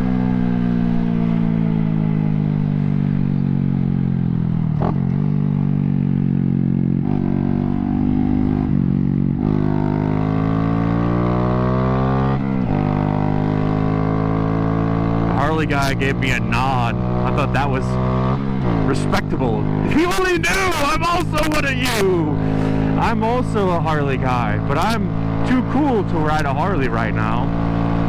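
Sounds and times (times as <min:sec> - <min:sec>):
motorcycle engine running: 0:00.0 - 0:28.0.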